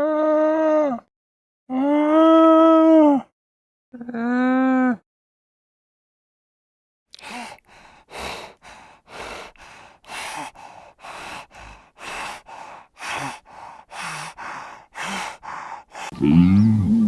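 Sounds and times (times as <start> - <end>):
heavy breathing: 7.2 - 17.0.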